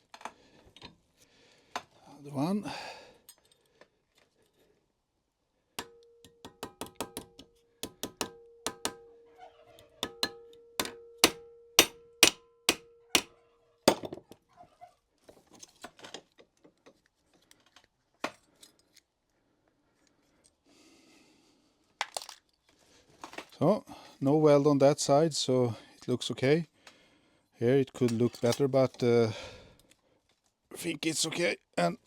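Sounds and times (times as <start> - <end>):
hammer blows on metal: 5.8 - 9.2, 10.0 - 13.3.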